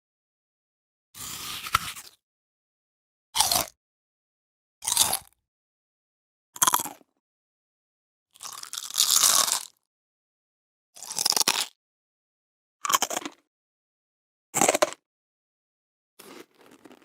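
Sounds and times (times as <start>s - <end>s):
person biting food: 1.2s - 2.2s
person chewing: 1.2s - 2.2s, 16.2s - 17.0s.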